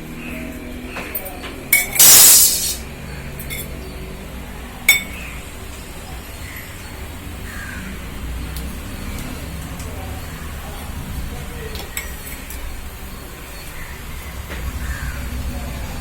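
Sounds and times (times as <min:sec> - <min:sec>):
metal clink: 0:01.8 - 0:02.8
seeds sizzling in hot oil: 0:02.0 - 0:02.8.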